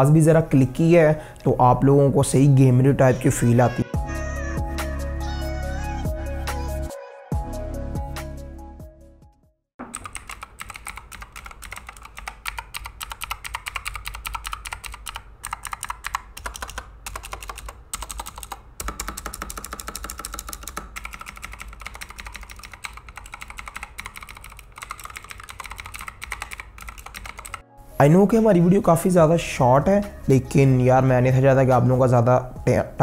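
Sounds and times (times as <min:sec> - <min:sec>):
fast typing on mechanical keyboard: 0:09.9 - 0:27.6.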